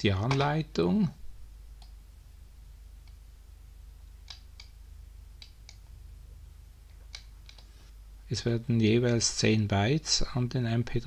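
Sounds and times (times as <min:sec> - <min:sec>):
low hum: 0:00.0 - 0:11.0
faint sharp clicks: 0:04.2 - 0:04.8, 0:05.4 - 0:05.9, 0:06.9 - 0:07.7.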